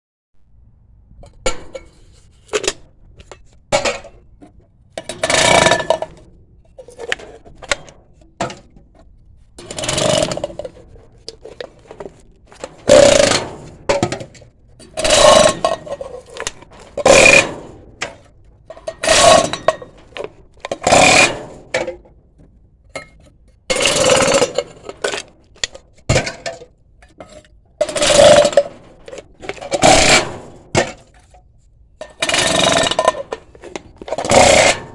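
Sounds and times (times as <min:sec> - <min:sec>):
metal cans being crushed: 0:01.2 - 0:22.2, 0:23.0 - 0:34.9.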